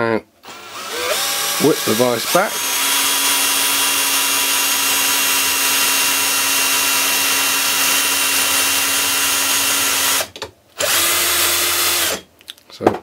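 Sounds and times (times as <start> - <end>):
power drill running: 0.4 - 12.2.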